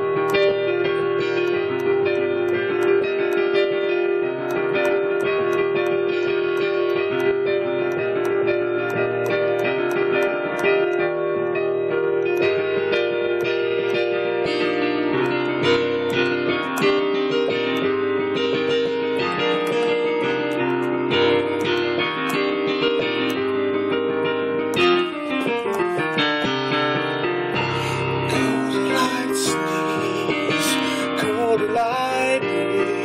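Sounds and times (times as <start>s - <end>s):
piano playing: 0.0s - 33.0s.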